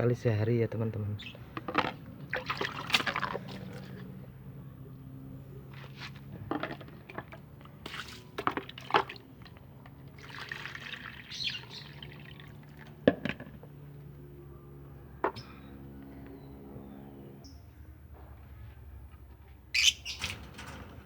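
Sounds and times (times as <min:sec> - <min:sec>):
water pouring and dripping: 0:02.3 - 0:03.9, 0:07.8 - 0:13.0
steady low hum: 0:12.3 - 0:21.0.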